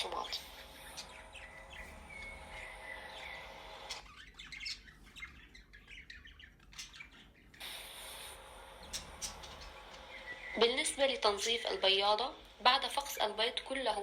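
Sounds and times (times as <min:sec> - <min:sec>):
whistled bird notes: 0:00.0 - 0:08.1, 0:08.8 - 0:11.6
budgerigars chirping: 0:00.0 - 0:14.0.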